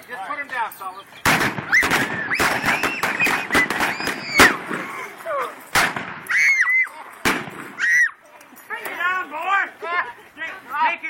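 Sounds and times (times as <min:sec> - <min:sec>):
blank gunshots: 0:01.2 - 0:05.0, 0:05.7 - 0:06.3, 0:07.2 - 0:07.8
people shouting: 0:01.6 - 0:04.7, 0:06.2 - 0:07.0, 0:07.8 - 0:08.2.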